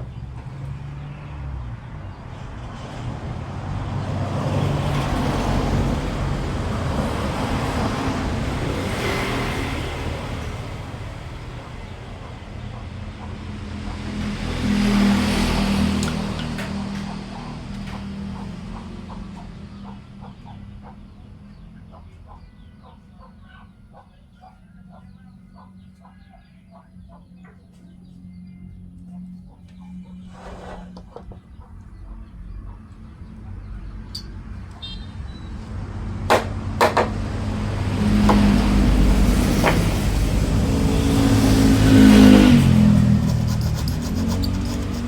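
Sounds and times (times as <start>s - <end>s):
birds chirping: 10.1s - 45.0s
engine running: 28.1s - 45.0s
sharp knocks: 36.3s - 37.3s.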